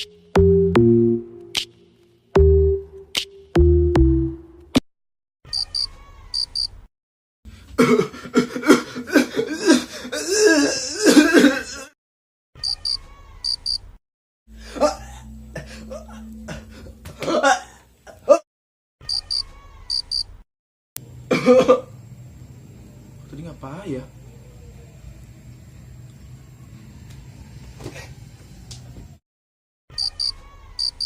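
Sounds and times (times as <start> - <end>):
people coughing: 7.8 - 11.9, 21.3 - 21.9.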